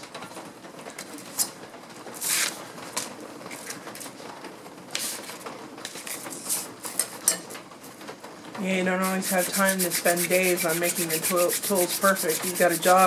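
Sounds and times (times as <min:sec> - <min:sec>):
steel scraping on sandpaper: 0:09.0 - 0:13.0.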